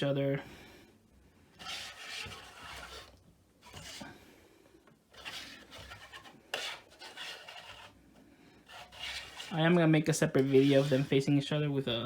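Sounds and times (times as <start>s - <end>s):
plastic figures rubbing and scraping: 1.6s - 4.2s, 5.1s - 11.5s.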